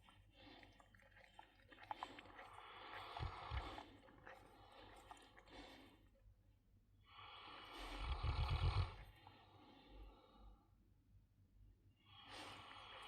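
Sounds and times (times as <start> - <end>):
dog snoring: 2.4 - 3.8, 7.1 - 9.2.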